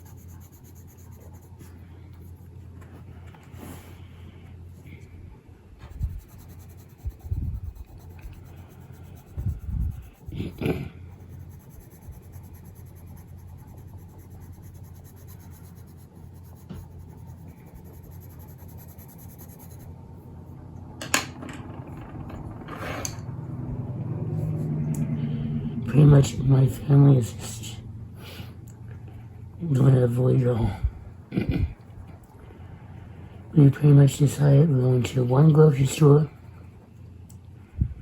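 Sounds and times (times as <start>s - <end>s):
pencil scratching on paper: 0.0s - 2.6s, 5.8s - 19.9s.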